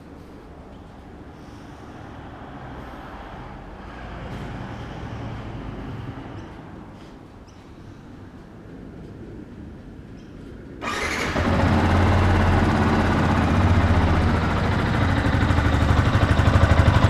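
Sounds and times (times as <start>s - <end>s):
motorcycle engine running: 10.8s - 17.0s.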